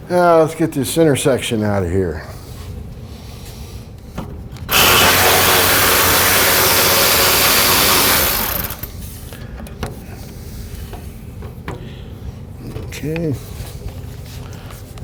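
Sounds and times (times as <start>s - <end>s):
power tool whirring: 4.7s - 9.0s.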